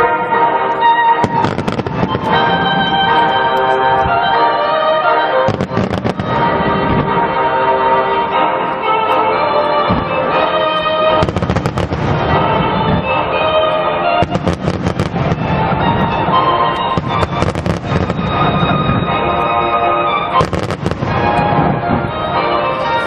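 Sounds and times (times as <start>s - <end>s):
background music with sustained tones: 0.0s - 23.0s
fireworks crackling pops: 0.8s - 3.7s, 5.5s - 7.2s, 9.9s - 19.5s, 20.2s - 23.0s.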